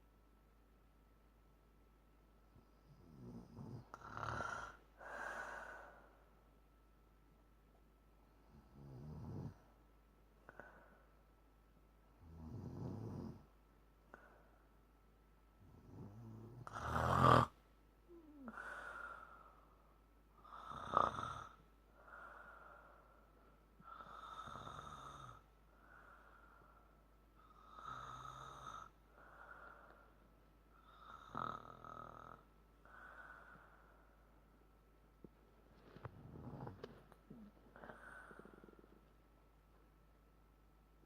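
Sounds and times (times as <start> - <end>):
soft breaths: 2.5 - 6.6, 8.3 - 11.5, 12.9 - 15.0, 18.0 - 40.0
woman snoring: 2.9 - 6.0, 8.5 - 9.6, 12.2 - 13.5, 15.7 - 19.5, 20.4 - 22.4, 23.8 - 26.0, 27.4 - 29.9, 30.8 - 33.7, 36.1 - 38.8.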